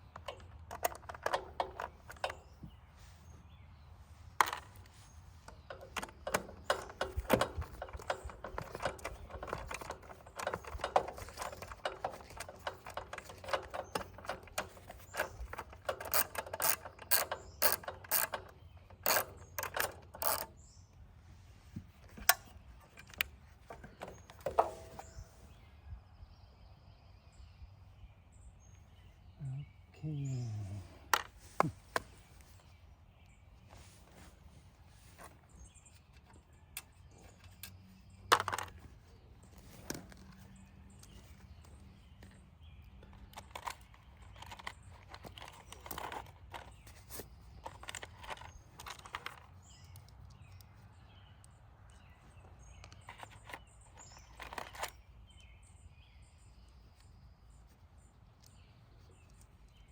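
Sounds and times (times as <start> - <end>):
ratchet clicks and clatter: 5.5 - 20.6, 43.0 - 50.4.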